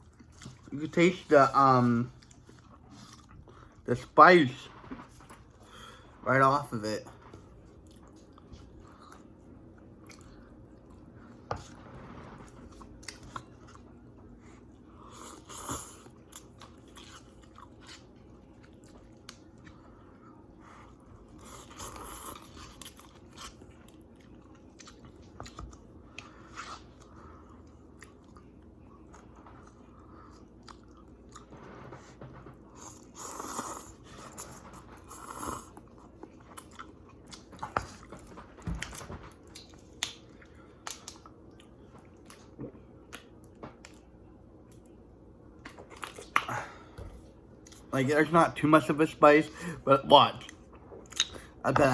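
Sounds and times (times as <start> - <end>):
person chewing noodles: 0.0 - 3.9, 7.5 - 11.8, 12.5 - 31.6, 32.6 - 45.0.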